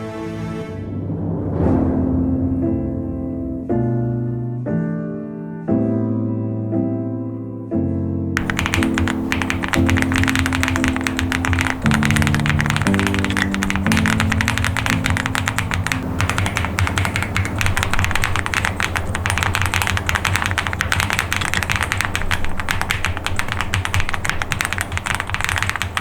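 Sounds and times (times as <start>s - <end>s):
background music: 0.0s - 19.7s
mechanical keyboard typing: 8.4s - 26.0s.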